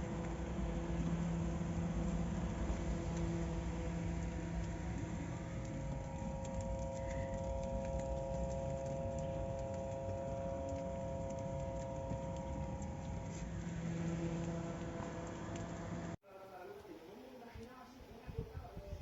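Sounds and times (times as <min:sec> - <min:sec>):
electric fan running: 0:00.0 - 0:19.0.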